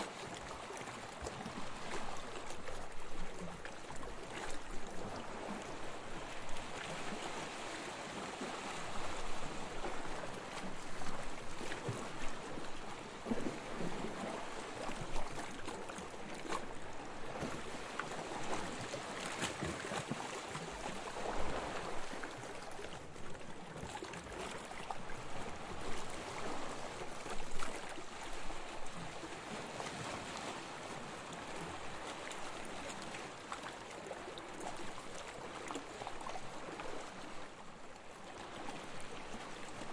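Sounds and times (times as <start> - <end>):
gentle waves washing onto beach: 0.0 - 39.9.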